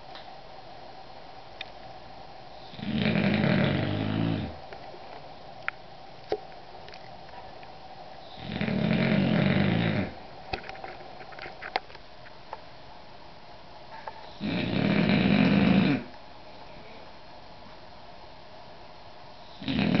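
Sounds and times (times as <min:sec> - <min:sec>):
dog snoring: 0:02.5 - 0:04.6, 0:08.2 - 0:10.2, 0:14.3 - 0:16.1, 0:19.4 - 0:20.0.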